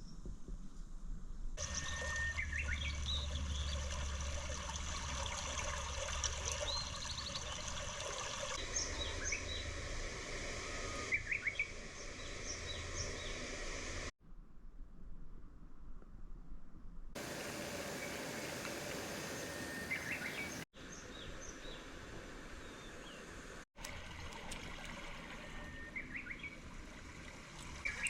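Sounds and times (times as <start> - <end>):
small birds chirping: 1.6 - 3.9, 17.2 - 21.9.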